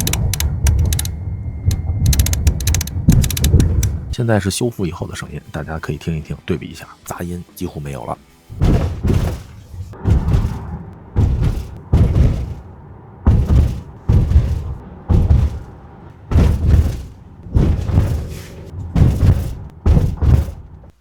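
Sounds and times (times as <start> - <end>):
dull thuds from car suspension: 8.5 - 21.0
heavy low tyre thumps: 8.5 - 21.0.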